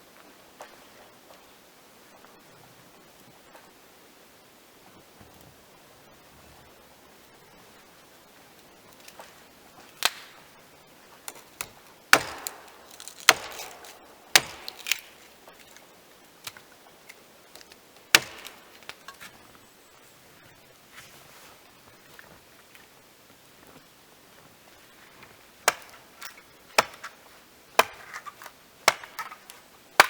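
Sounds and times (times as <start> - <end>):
chopping wood: 10.0 - 10.4, 11.3 - 15.8, 16.4 - 19.3, 25.6 - 27.2, 27.8 - 30.0.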